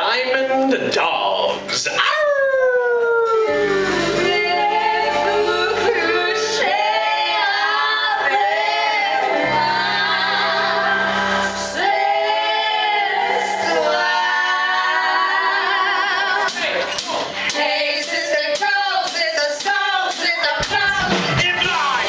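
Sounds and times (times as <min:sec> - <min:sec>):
instrumental accompaniment: 0:03.3 - 0:14.4
women singing: 0:03.4 - 0:22.0.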